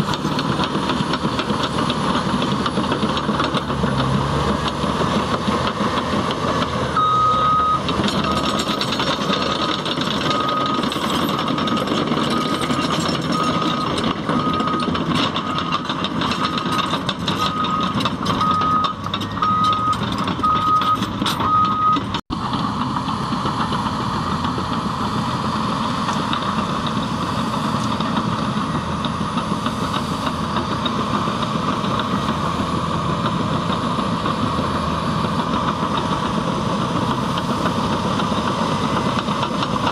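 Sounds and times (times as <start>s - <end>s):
bulldozer diesel engine running: 0.0s - 39.9s
reversing alarm beeping: 7.0s - 22.2s.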